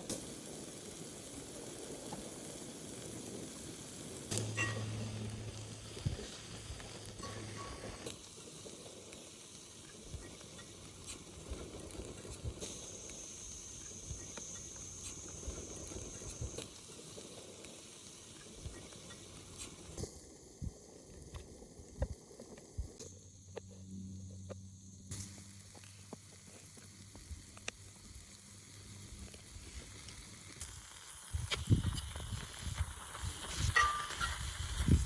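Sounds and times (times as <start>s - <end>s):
food sizzling in a pan: 0.0s - 23.1s, 25.1s - 35.0s
light clicks and crackles: 24.4s - 35.0s.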